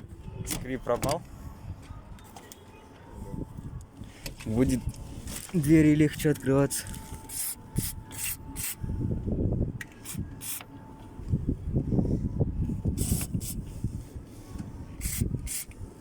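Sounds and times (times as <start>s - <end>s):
aerosol can spraying: 13.0s - 13.6s, 15.0s - 15.7s.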